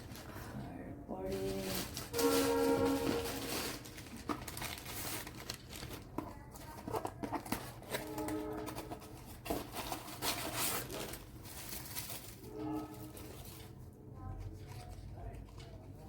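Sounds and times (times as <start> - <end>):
packaging crinkling and tearing: 1.2 - 13.8.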